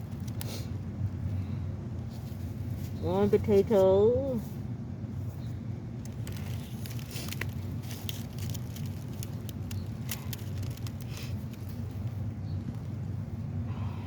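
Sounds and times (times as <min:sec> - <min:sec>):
steady low hum: 0:00.0 - 0:14.0
soil being dug crackling: 0:06.0 - 0:12.9.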